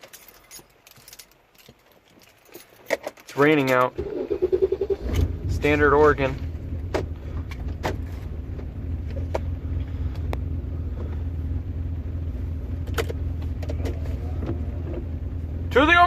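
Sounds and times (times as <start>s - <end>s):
car engine idling: 4.0s - 16.0s.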